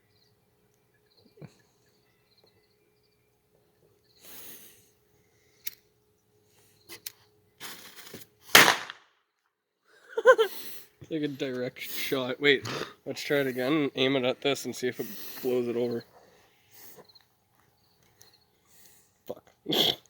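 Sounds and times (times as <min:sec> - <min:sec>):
small sharp clicks: 0:05.6 - 0:05.8
short hiss: 0:06.9 - 0:08.7
firecracker bang: 0:08.5 - 0:09.0.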